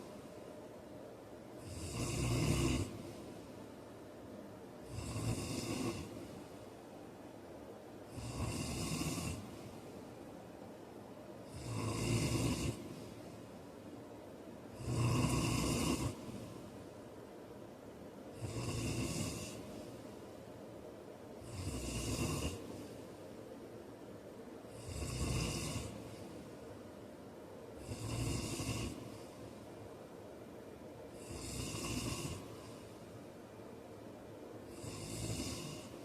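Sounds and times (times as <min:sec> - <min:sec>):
man snoring: 0:01.6 - 0:03.2, 0:04.8 - 0:06.4, 0:08.1 - 0:09.8, 0:11.4 - 0:13.2, 0:14.7 - 0:16.7, 0:18.3 - 0:20.0, 0:21.4 - 0:22.9, 0:24.7 - 0:26.5, 0:27.8 - 0:29.4, 0:31.1 - 0:33.0, 0:34.7 - 0:36.0.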